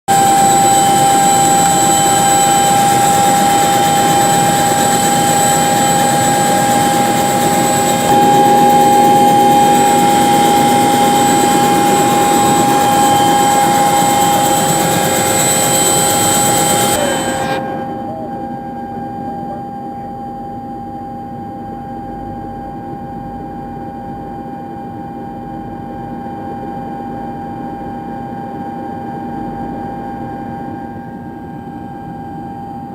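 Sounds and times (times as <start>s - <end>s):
helicopter turbine whine: 0.1s - 21.5s
helicopter engine and rotor rush: 0.1s - 21.9s.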